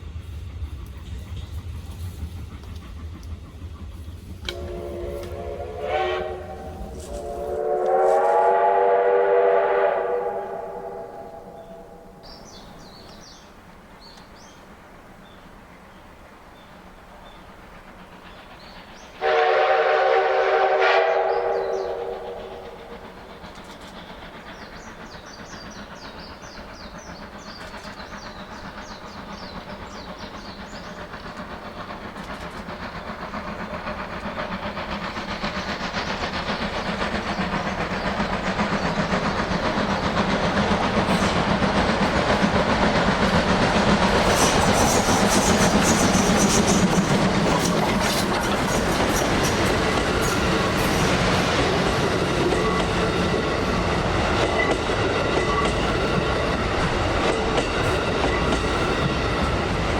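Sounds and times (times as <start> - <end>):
train running: 0.0 - 59.9
steam locomotive whistle: 4.4 - 12.6, 19.2 - 23.0.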